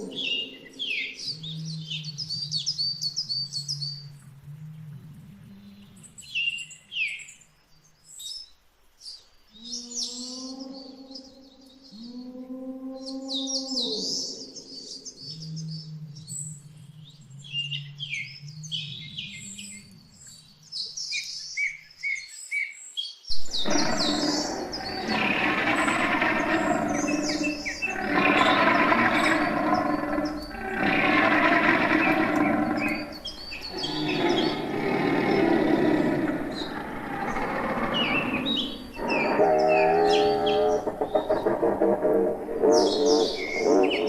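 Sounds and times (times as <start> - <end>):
birds chirping: 0.0 - 4.2, 23.3 - 44.0.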